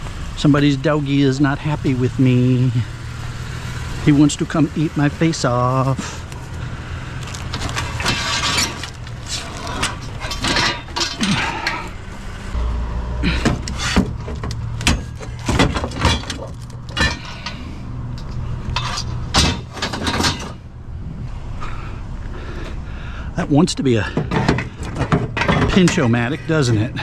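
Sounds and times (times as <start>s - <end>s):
scrap metal clattering: 5.5s - 12.6s, 13.2s - 20.7s, 24.0s - 26.9s.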